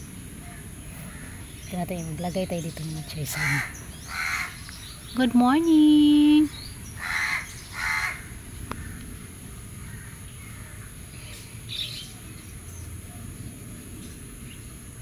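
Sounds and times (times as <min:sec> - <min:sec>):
crow cawing: 0:01.1 - 0:01.4, 0:03.3 - 0:04.6, 0:07.0 - 0:09.0, 0:09.8 - 0:10.8
higher bird call: 0:06.4 - 0:09.0.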